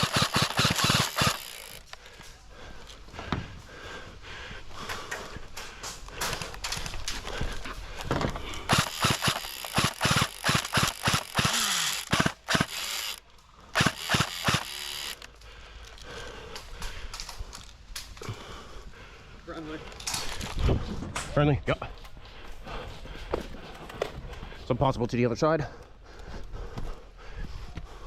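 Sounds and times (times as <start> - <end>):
airsoft guns firing single shots: 13.8 - 14.7.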